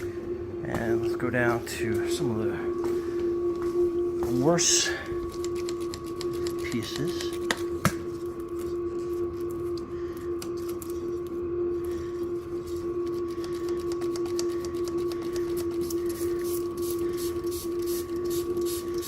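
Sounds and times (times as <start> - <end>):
electric spray gun humming: 13.0 - 19.0.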